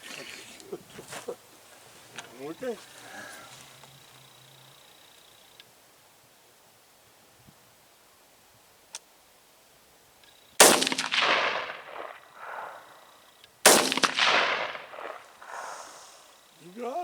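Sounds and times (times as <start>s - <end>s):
rifle shots with echoes: 10.6s - 12.9s, 13.7s - 15.4s.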